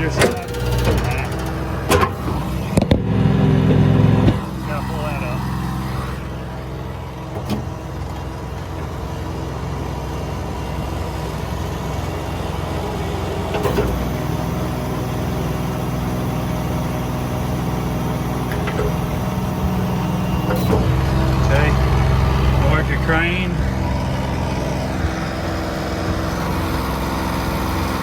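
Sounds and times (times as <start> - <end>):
heavy clunk: 0.0 - 4.5, 18.4 - 22.6
engine running steadily: 0.0 - 28.0.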